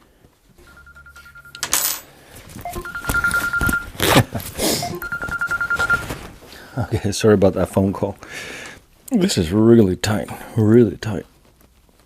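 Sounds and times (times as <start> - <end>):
rustling handling noises: 0.1 - 6.8, 8.6 - 12.0
telephone ringing: 0.6 - 4.0, 4.8 - 6.3.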